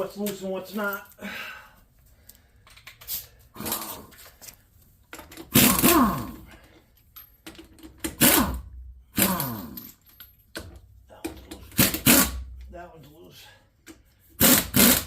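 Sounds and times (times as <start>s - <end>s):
man's breathy vocal outbursts: 5.6s - 6.6s.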